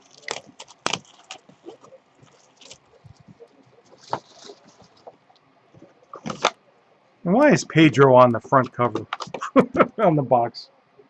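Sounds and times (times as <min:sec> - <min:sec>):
packaging rustling and crinkling: 0:00.0 - 0:06.6.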